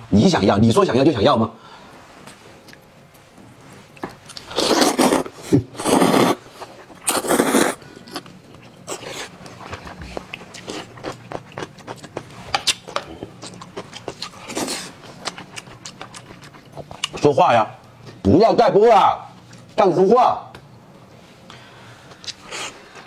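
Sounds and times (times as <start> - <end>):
chewing with small clicks: 9.4 - 17.2.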